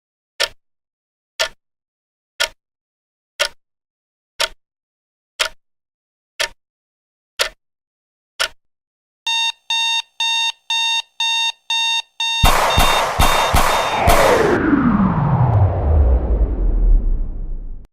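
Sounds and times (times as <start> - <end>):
alarm clock ticking: 9.3 - 14.6
rapid electronic beeping: 12.3 - 14.6
loud hit with falling swoosh: 12.4 - 17.9.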